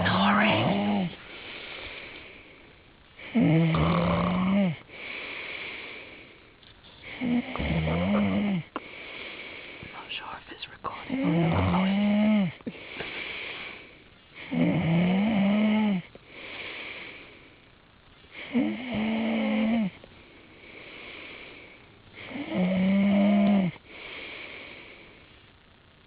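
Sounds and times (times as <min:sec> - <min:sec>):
person snoring: 0:00.0 - 0:02.0, 0:03.2 - 0:05.8, 0:07.0 - 0:09.0, 0:11.0 - 0:13.8, 0:14.4 - 0:16.1, 0:18.4 - 0:20.0, 0:22.2 - 0:24.8
quiet breaths: 0:00.0 - 0:26.0.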